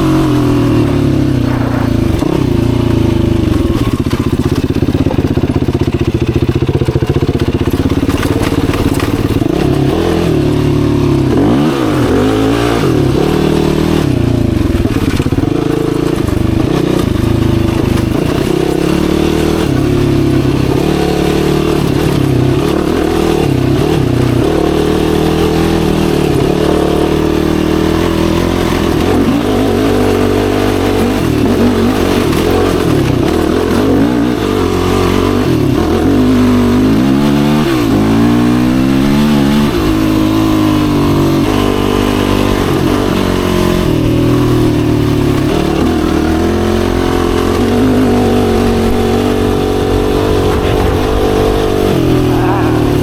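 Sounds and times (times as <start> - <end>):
quad engine revving: 0.0 - 53.0.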